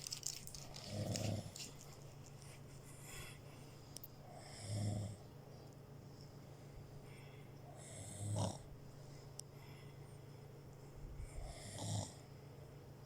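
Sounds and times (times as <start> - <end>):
soft breathing: 1.2 - 12.7
rasping snores: 7.8 - 8.6, 11.5 - 12.2.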